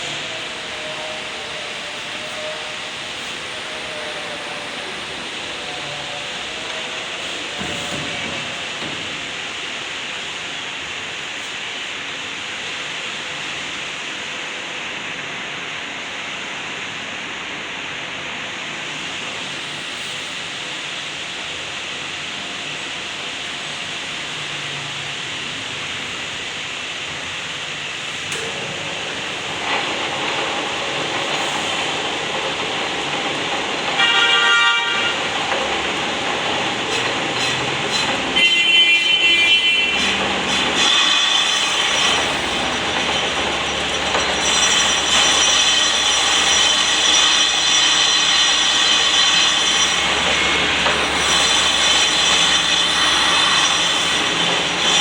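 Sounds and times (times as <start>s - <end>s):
high-pitched squeal: 0.0s - 9.3s, 28.3s - 55.0s
lathe cutting hiss: 0.0s - 14.3s, 18.8s - 55.0s.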